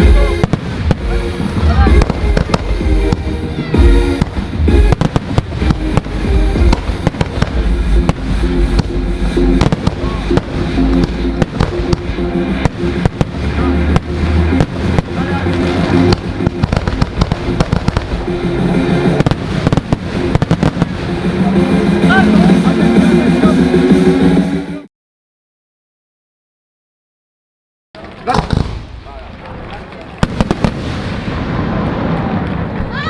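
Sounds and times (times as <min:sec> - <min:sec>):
fireworks bangs and crackles: 0:00.0 - 0:22.8, 0:28.0 - 0:33.0
loud music over sound system: 0:00.0 - 0:24.9.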